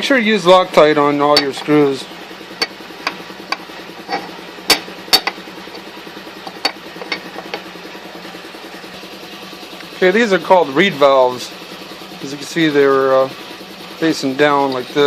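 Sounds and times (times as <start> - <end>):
metal parts clicking and tapping: 1.3 - 1.8, 2.6 - 7.6.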